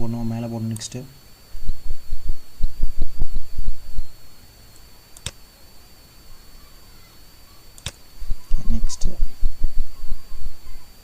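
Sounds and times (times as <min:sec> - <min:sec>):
high-pitched electrical whine: 0:00.0 - 0:11.0
mouse click: 0:05.2 - 0:05.4, 0:07.8 - 0:08.0.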